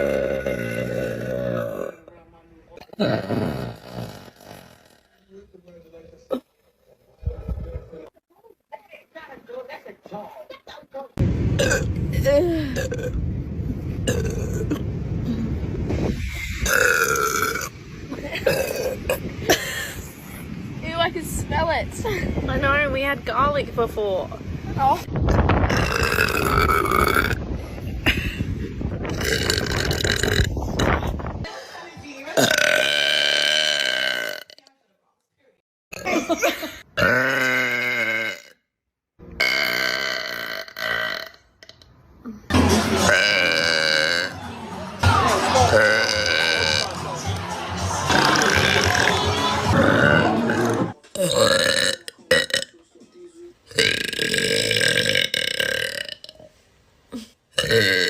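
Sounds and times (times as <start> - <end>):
woman burping: 0.0 - 2.0, 2.8 - 5.2, 11.6 - 13.2, 14.1 - 15.4, 16.6 - 20.0, 25.7 - 27.4, 29.1 - 31.0, 32.3 - 34.6, 35.9 - 38.6, 39.4 - 44.4, 45.5 - 46.9, 48.0 - 52.7, 53.7 - 56.4, 57.1 - 58.0.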